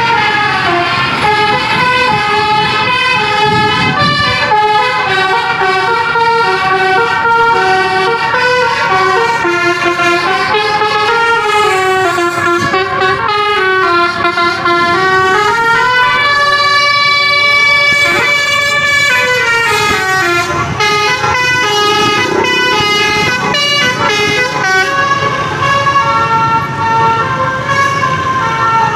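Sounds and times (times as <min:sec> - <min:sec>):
multi-trumpet air horn melody: 0:00.0 - 0:28.9.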